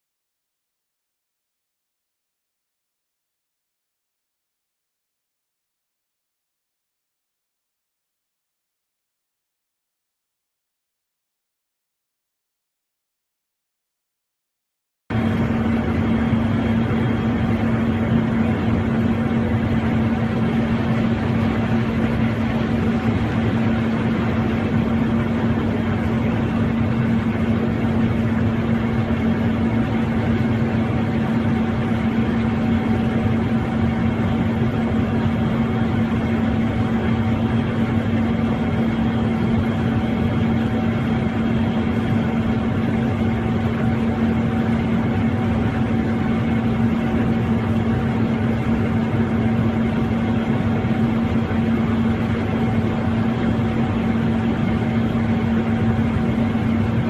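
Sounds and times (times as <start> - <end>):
aircraft engine and airflow drone: 15.1 - 57.0.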